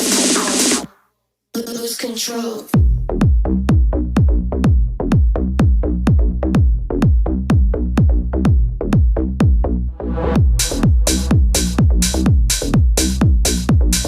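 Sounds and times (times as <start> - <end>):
electronic music with drum-machine beat: 0.0 - 0.9, 2.8 - 14.0
rising hiss: 0.0 - 0.9.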